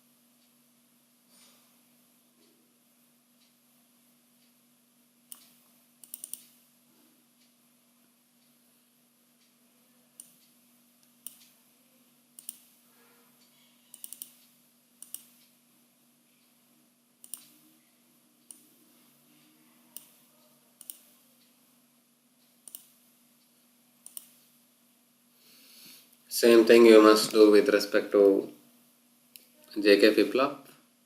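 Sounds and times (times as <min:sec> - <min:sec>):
faint electrical hum: 0:00.0 - 0:31.0
computer mouse clicking: 0:05.3 - 0:06.6, 0:10.2 - 0:11.6, 0:12.4 - 0:12.8, 0:13.9 - 0:15.6, 0:17.2 - 0:17.6, 0:18.4 - 0:18.8, 0:19.9 - 0:21.5, 0:22.4 - 0:23.0, 0:24.0 - 0:24.5.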